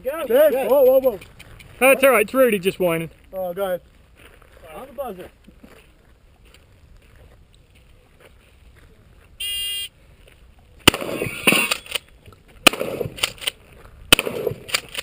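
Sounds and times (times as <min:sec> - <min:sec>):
shotgun blasts: 0:10.8 - 0:12.0, 0:12.6 - 0:13.5, 0:14.1 - 0:15.0.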